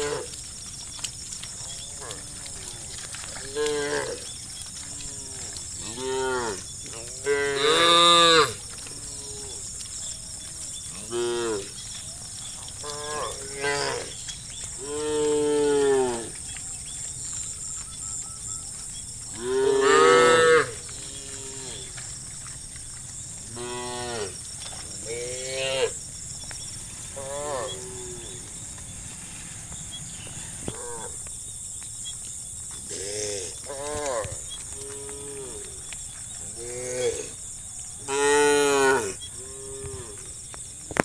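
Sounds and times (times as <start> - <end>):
cows mooing: 0.0 - 0.4, 1.6 - 11.9, 12.8 - 16.4, 19.3 - 22.1, 23.5 - 26.0, 27.0 - 31.2, 38.0 - 40.3.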